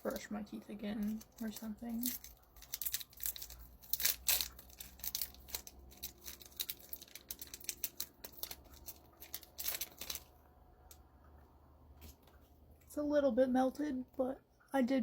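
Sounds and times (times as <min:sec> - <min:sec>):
plastic wrapper tearing and crinkling: 0:01.0 - 0:10.4.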